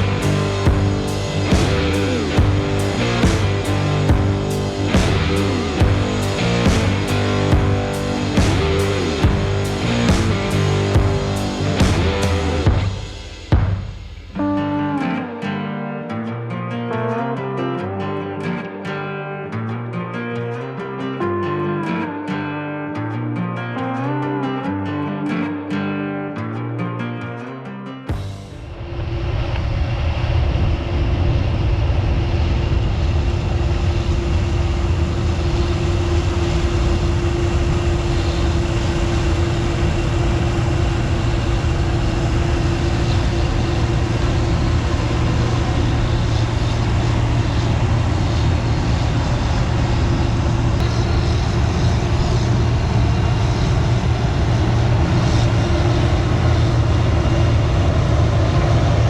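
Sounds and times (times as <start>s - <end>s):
combine harvester engine rumble: 0.0s - 13.7s, 28.5s - 59.0s.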